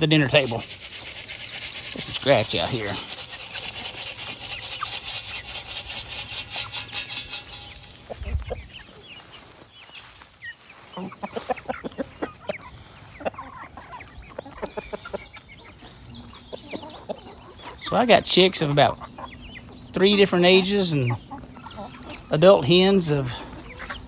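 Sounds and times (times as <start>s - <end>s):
rhythmic scratchy rustling: 0.0s - 11.7s
chickens clucking: 0.0s - 24.0s.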